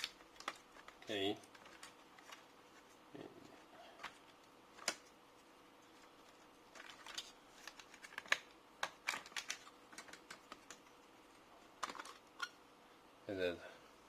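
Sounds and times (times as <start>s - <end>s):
small plastic parts clicking: 6.7s - 10.8s.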